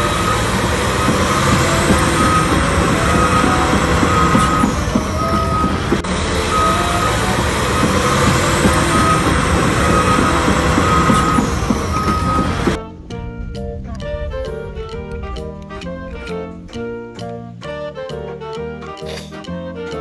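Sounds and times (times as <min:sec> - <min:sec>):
dense vehicle rumbling: 0:00.0 - 0:17.8
short high beeps: 0:00.1 - 0:12.8.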